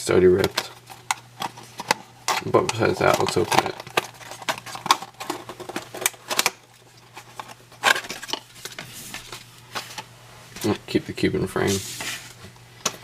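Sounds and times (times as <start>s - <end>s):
cardboard packaging clicks and scrapes: 0.4s - 10.1s.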